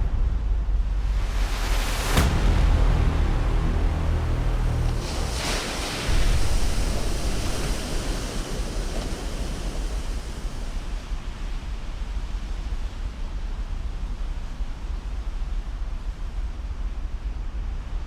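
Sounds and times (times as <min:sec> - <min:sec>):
ocean waves breaking: 0:00.9 - 0:12.0.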